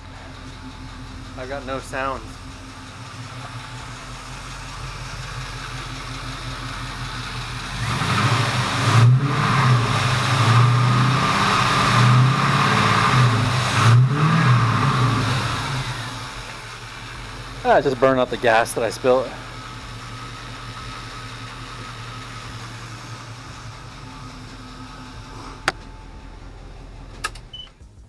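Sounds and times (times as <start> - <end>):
engine idling and revving: 0.0 - 28.0.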